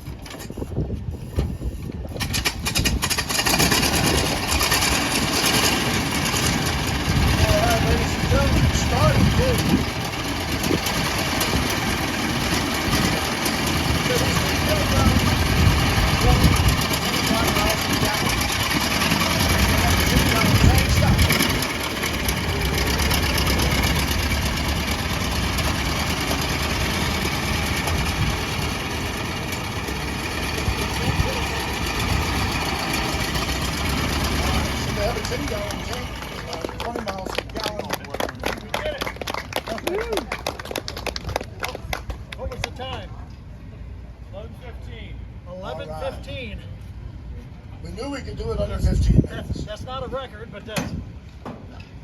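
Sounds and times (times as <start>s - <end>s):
car engine starting: 2.1s - 36.9s.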